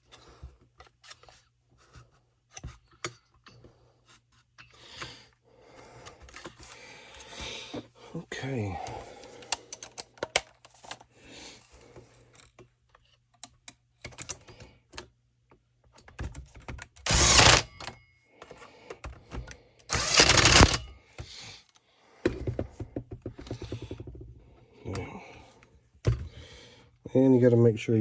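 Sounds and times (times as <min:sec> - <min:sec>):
small parts clicking and tapping: 0:08.9 - 0:11.1, 0:12.3 - 0:20.9.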